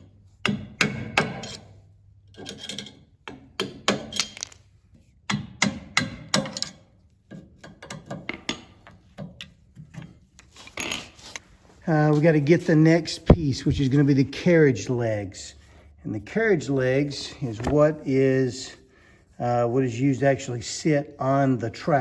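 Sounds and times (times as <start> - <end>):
knocks taps and scraping on wood: 0.4 - 1.6, 2.3 - 11.4, 16.9 - 18.2.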